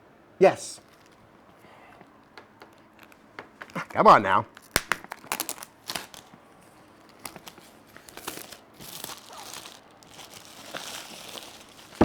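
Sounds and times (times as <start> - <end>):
packaging crinkling and rustling: 0.8 - 1.3, 2.7 - 3.2, 4.5 - 12.0.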